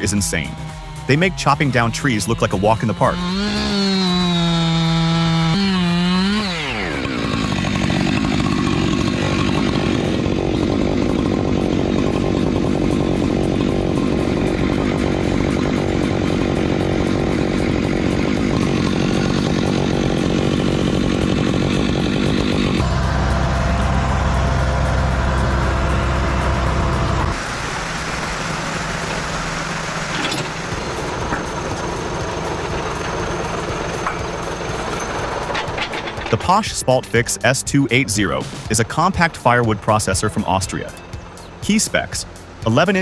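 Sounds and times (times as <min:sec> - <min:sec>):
chainsaw cutting wood: 0:00.0 - 0:36.8
low steady engine hum: 0:22.3 - 0:36.7.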